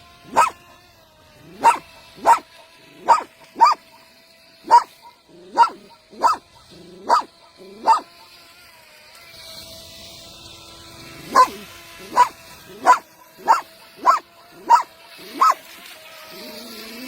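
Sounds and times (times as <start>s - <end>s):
dog barking: 0.3s - 0.6s, 1.5s - 8.3s, 11.2s - 15.7s.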